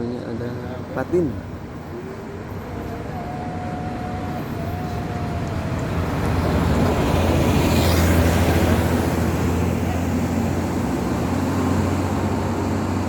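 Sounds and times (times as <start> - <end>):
bus engine rumble passing: 0.0 - 13.0.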